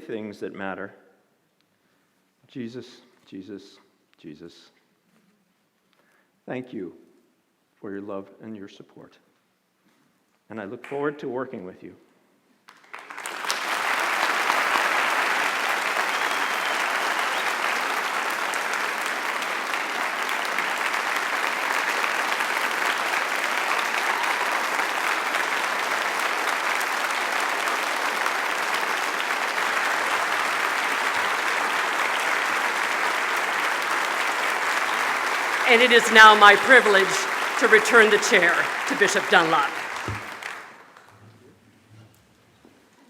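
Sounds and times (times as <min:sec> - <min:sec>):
large crowd applauding: 0:12.7 - 0:41.2.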